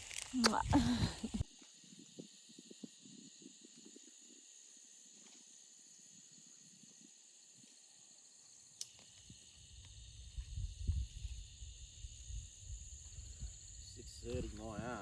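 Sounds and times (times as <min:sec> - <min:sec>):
insects trilling: 0:00.0 - 0:15.0.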